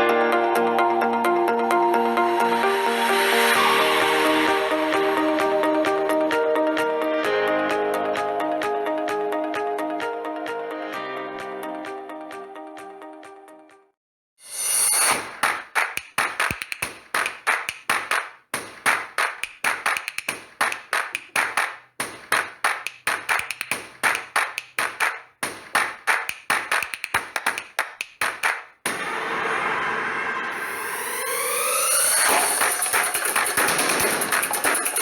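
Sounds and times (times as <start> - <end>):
percussive music: 14.9 - 28.9, 32.0 - 35.0.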